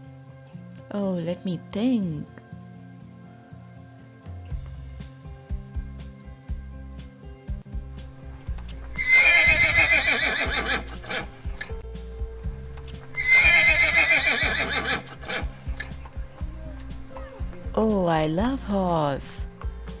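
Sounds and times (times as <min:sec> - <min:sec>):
background music: 0:00.0 - 0:20.0
horse whinnying: 0:08.2 - 0:11.8, 0:12.6 - 0:17.8.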